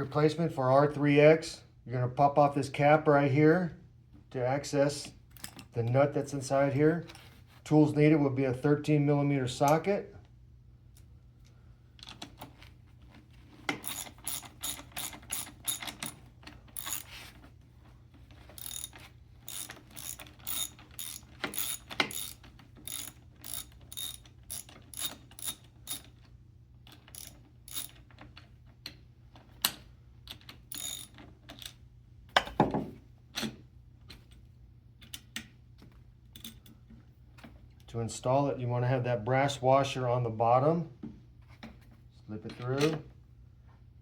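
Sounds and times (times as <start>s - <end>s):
ratchet wrench clicking: 13.7s - 17.1s, 18.6s - 26.1s, 26.9s - 28.1s, 30.7s - 31.7s.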